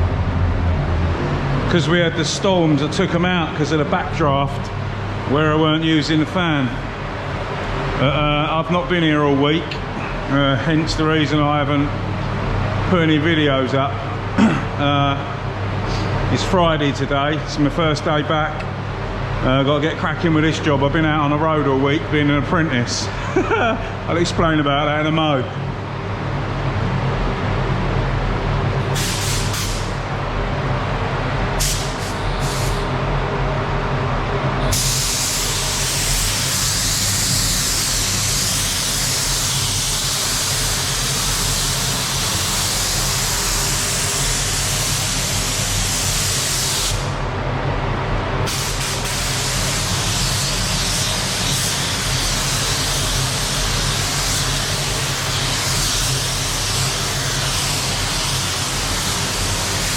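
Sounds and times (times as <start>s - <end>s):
extraction fan humming: 0.0s - 59.9s
paint spray gun hissing: 29.0s - 29.9s.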